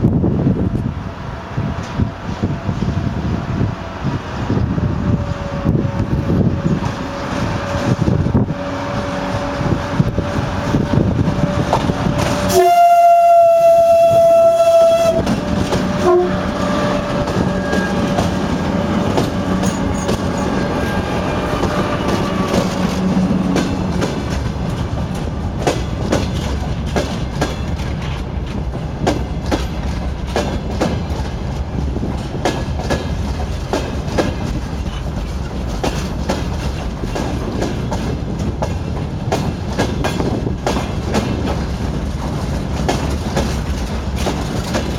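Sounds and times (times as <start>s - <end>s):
wheels clicking over rail joints: 5.7s - 44.9s
locomotive horn blast: 11.4s - 23.6s.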